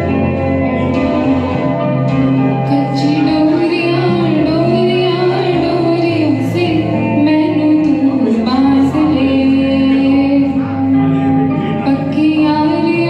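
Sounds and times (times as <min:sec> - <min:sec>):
held bass and sustained chords: 0:00.0 - 0:13.0
woman singing: 0:02.6 - 0:11.0, 0:11.6 - 0:13.0.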